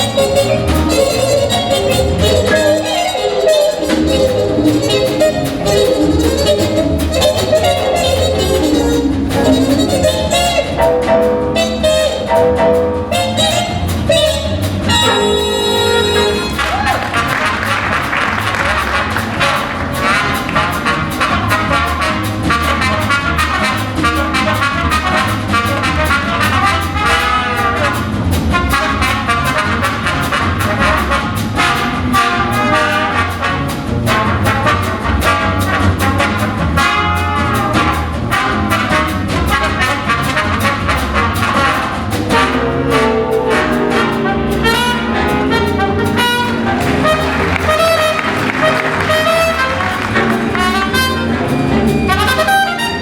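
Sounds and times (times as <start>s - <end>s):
big band jazz: 0.0s - 53.0s
rhythm section: 0.0s - 53.0s
trumpets and trombones: 0.0s - 53.0s.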